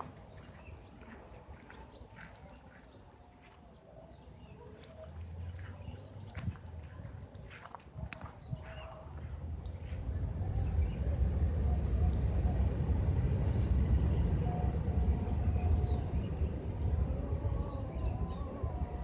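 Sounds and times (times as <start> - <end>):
jet engines rumbling: 4.8 - 19.0.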